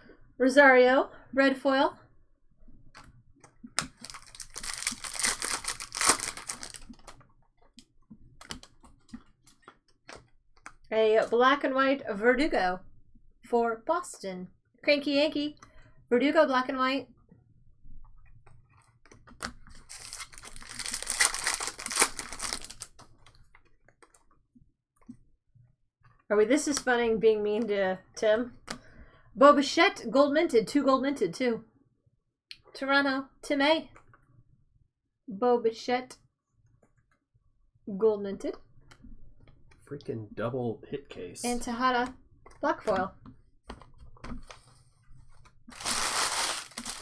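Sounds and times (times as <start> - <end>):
foil wrapper crinkling and tearing: 3.8 - 7.0, 19.8 - 23.0, 45.7 - 47.0.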